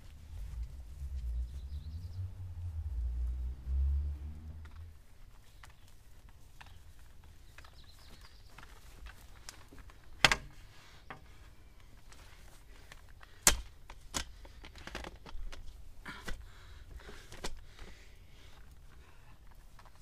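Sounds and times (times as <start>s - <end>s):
handling noise: 4.6s - 20.0s.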